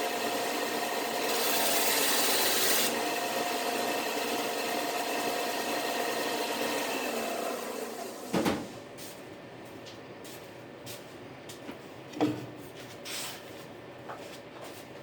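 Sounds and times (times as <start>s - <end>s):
workshop handling knocks and clacks: 8.3s - 8.7s, 11.5s - 15.0s.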